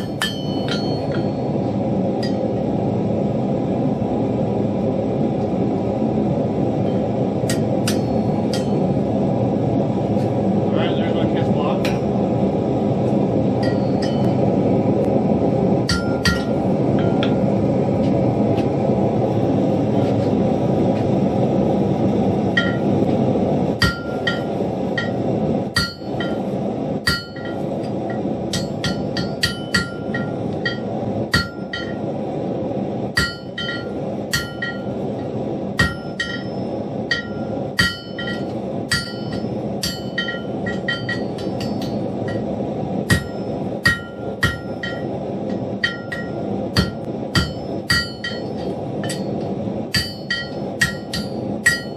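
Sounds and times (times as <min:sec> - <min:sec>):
hammer striking steel on anvil: 0:00.0 - 0:01.5, 0:02.2 - 0:02.6, 0:06.9 - 0:08.9, 0:13.6 - 0:14.4, 0:15.8 - 0:17.4, 0:22.5 - 0:23.0, 0:23.8 - 0:32.1, 0:33.1 - 0:51.9
steady rushing noise: 0:00.0 - 0:51.9.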